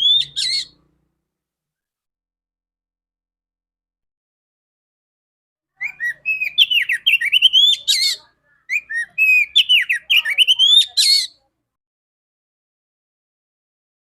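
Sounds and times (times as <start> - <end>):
bird singing whistled notes: 0.0 - 0.8, 5.8 - 11.3.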